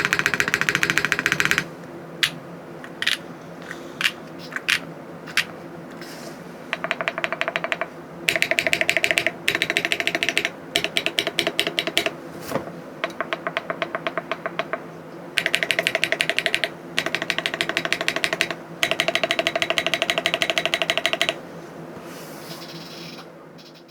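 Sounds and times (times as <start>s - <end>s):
mechanical keyboard typing: 0.0s - 3.2s, 6.7s - 12.2s, 13.0s - 14.8s, 15.4s - 21.4s.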